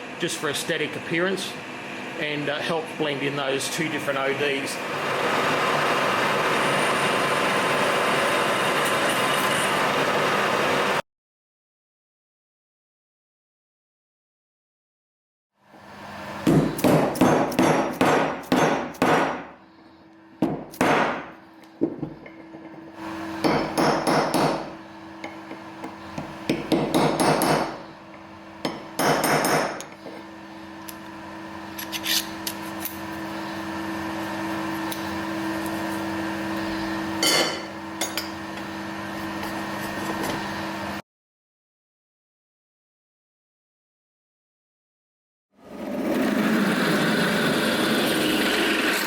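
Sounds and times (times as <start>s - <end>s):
hammer striking metal: 16.5s - 19.5s, 20.4s - 21.3s, 23.4s - 25.4s, 26.5s - 27.8s, 28.6s - 29.9s.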